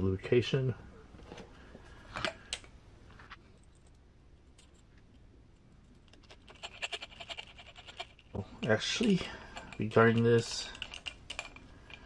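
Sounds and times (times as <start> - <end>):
small clicks and taps of parts: 3.7 - 12.0.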